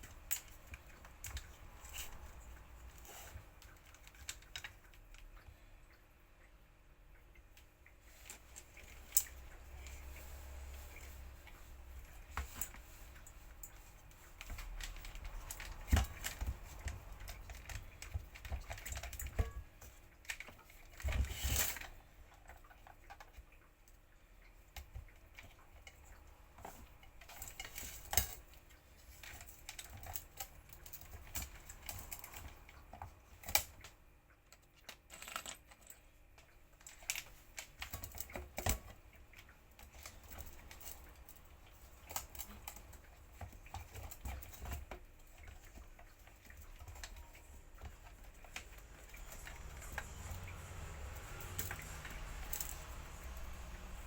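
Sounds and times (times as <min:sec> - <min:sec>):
small hard parts clattering: 0:08.1 - 0:23.4, 0:34.8 - 0:54.0.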